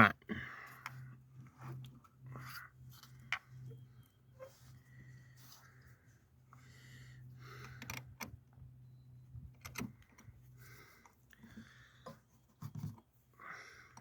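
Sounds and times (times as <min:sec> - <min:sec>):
low steady hum: 0:00.0 - 0:14.0.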